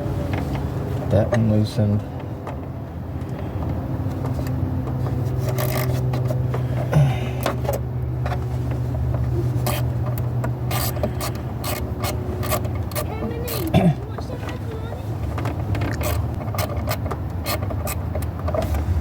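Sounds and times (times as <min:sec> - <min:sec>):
steady low hum: 0:00.0 - 0:19.0
ratchet clicks and scrapes: 0:04.2 - 0:06.6, 0:07.4 - 0:19.0.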